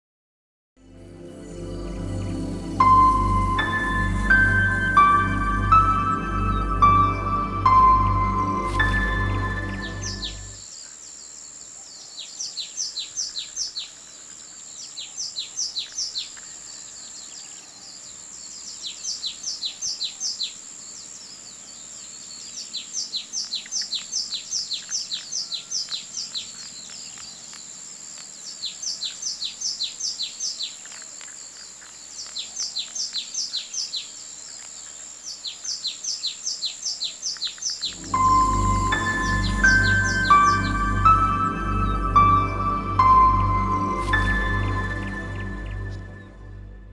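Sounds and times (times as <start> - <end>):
bird chirping song: 0.9 - 46.9
high-pitched whine: 37.9 - 46.9.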